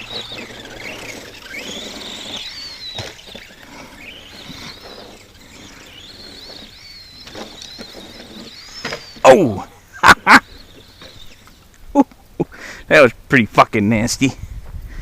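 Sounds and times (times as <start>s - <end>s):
rc truck motor whining: 0.0s - 9.2s, 10.4s - 11.7s.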